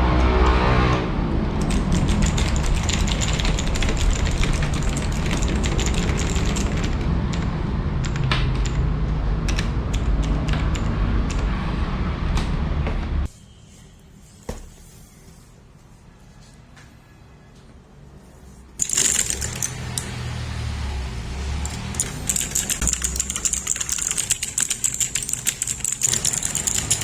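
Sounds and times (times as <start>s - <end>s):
mechanical keyboard typing: 1.6s - 11.5s, 18.8s - 20.1s, 21.7s - 27.0s.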